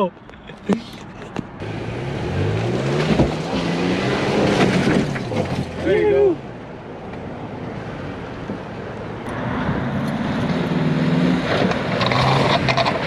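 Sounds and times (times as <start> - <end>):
vehicle engine revving: 0.7 - 5.9.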